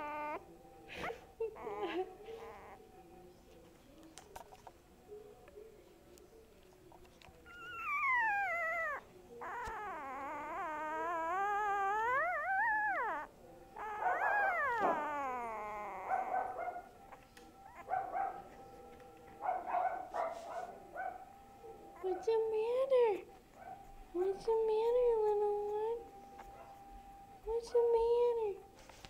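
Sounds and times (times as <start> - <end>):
dog whimpering: 0.0 - 2.9, 6.9 - 18.4, 21.9 - 27.2
young dog howling: 7.5 - 16.9.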